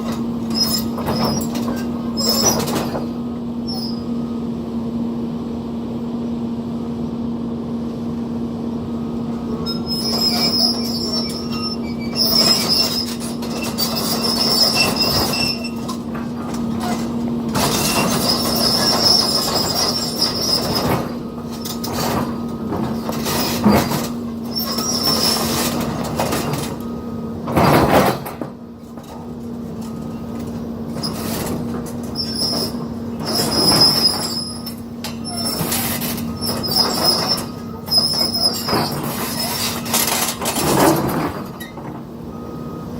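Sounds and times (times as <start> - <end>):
tracks clanking over rubble: 0.0 - 4.0, 9.6 - 42.9
tracks squealing: 0.0 - 4.2, 9.6 - 28.4, 30.9 - 41.8
excavator engine hum: 0.0 - 42.9.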